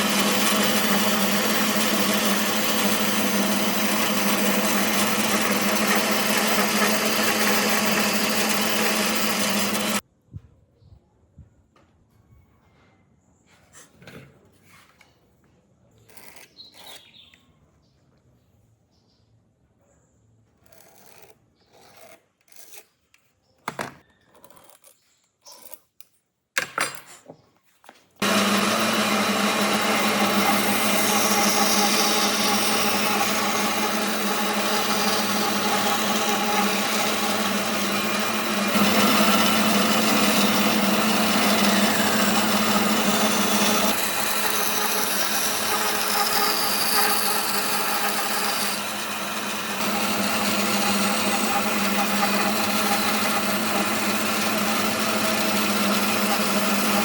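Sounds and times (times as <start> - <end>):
power tool working wood: 0.0 - 10.0, 28.2 - 57.0.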